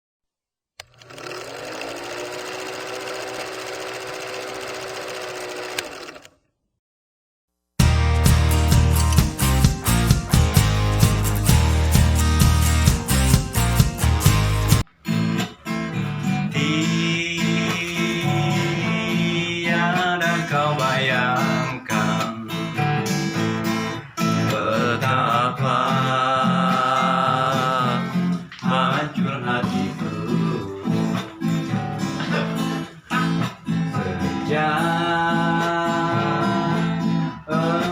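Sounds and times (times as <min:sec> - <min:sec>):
small machine rattling: 0:00.8 - 0:06.4
acoustic guitar strumming: 0:07.8 - 0:19.2.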